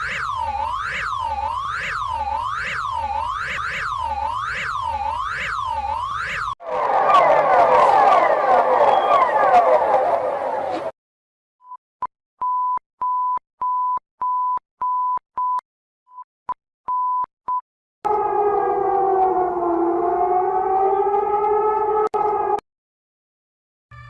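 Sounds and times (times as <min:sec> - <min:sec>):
vocoded alarm chord: 0:00.0 - 0:09.6, 0:18.1 - 0:22.6.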